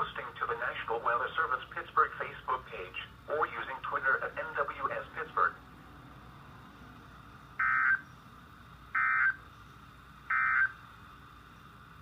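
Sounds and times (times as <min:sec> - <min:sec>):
digital data tone bursts: 0:07.6 - 0:08.0, 0:09.0 - 0:09.4, 0:10.3 - 0:10.8.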